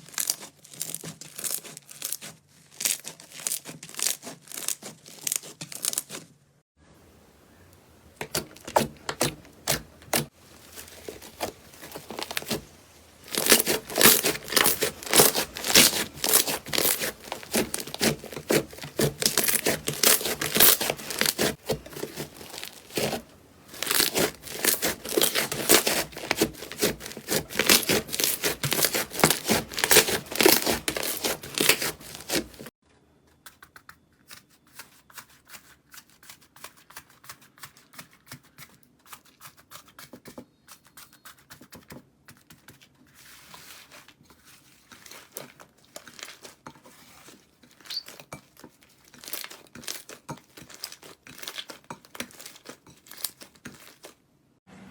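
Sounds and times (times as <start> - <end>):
slime crackling and popping: 0.0 - 6.2, 8.3 - 32.7, 49.0 - 54.1.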